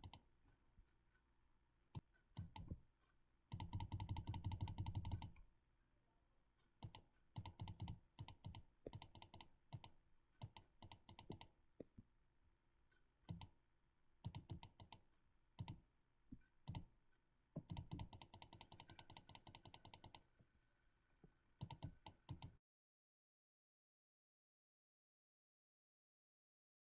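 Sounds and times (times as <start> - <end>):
computer mouse clicking: 0.0 - 0.3, 1.9 - 5.5, 6.8 - 11.9, 13.3 - 13.6, 14.2 - 15.0, 15.6 - 15.8, 16.4 - 16.9, 17.6 - 20.3, 21.6 - 22.6.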